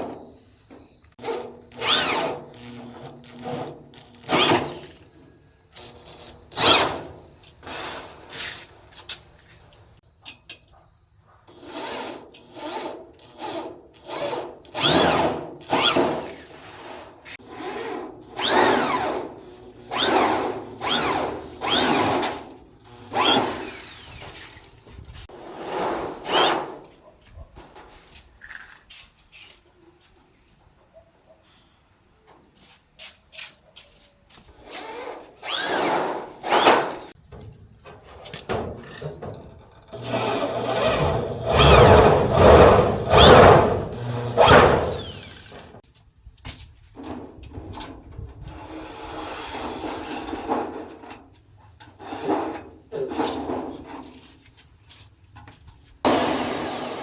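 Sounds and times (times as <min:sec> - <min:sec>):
power tool running: 0:01.2 - 0:05.0, 0:11.6 - 0:24.7, 0:34.7 - 0:37.1, 0:39.9 - 0:45.8, 0:56.1 - 0:57.0.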